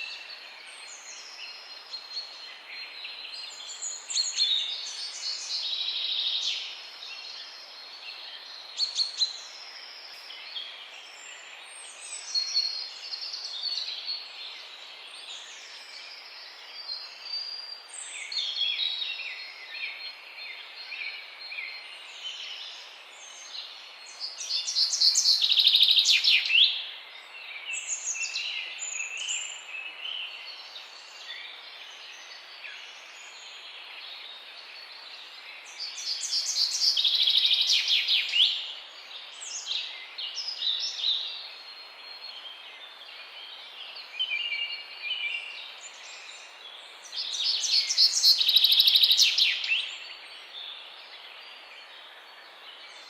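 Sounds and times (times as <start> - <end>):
faint bird chirps: 0.0 - 53.0
steady background hiss: 0.0 - 53.0.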